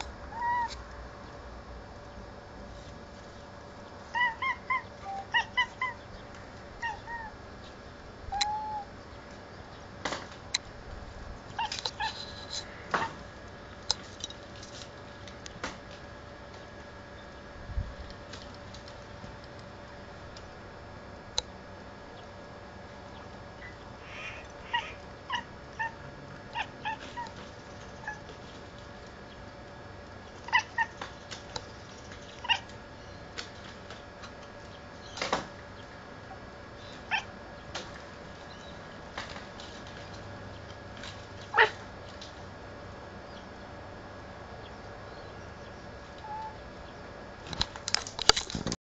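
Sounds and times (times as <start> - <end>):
faint steady hum: 0.0 - 48.8
cat chirping: 4.1 - 6.0, 6.8 - 7.3, 8.3 - 8.9, 23.6 - 27.3, 28.0 - 28.2, 46.2 - 46.6.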